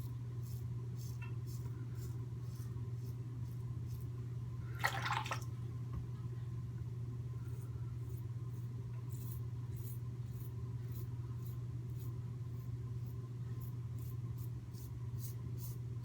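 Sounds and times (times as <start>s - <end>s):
water splash: 4.8s - 5.5s
razor scraping stubble: 8.1s - 15.8s.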